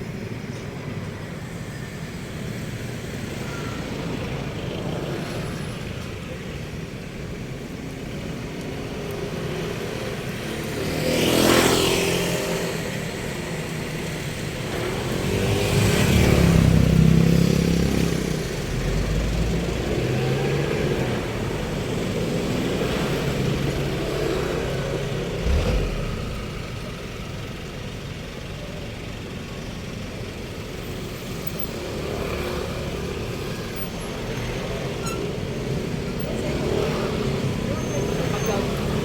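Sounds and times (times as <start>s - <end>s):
vehicles passing: 0.0s - 39.0s.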